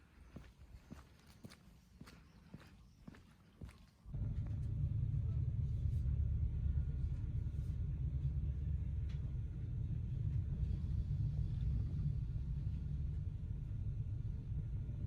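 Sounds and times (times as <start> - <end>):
steady low rumble: 4.1 - 15.0.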